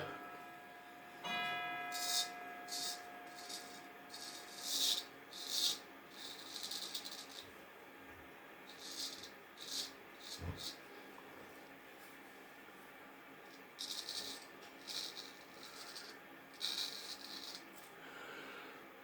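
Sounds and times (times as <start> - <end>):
ringing note with overtones: 0.0 - 4.6
scratchy scraping strokes: 1.9 - 7.5, 8.7 - 10.8, 13.8 - 17.7.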